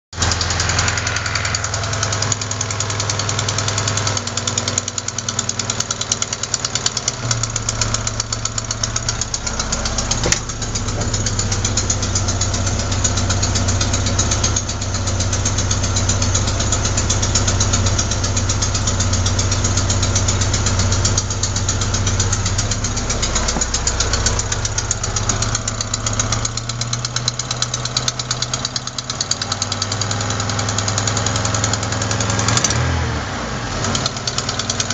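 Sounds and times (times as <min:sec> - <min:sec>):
car engine idling with ticking knock: 0:00.2 - 0:33.0, 0:33.7 - 0:34.9.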